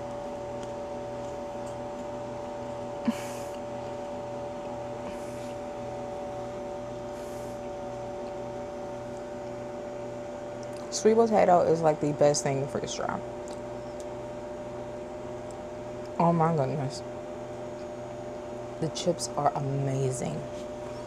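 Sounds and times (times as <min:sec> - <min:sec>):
appliance electrical hum: 0:00.0 - 0:21.0.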